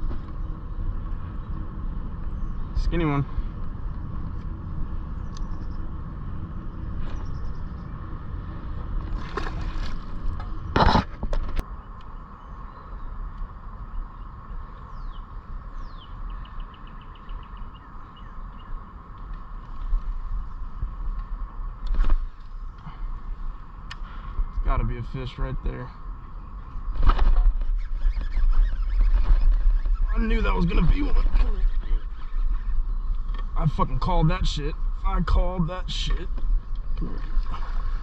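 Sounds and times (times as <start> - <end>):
faint constant hum: 0.0 - 38.0
low outdoor rumble: 0.0 - 38.0
bird chirping and trilling: 14.2 - 18.8, 27.5 - 33.5.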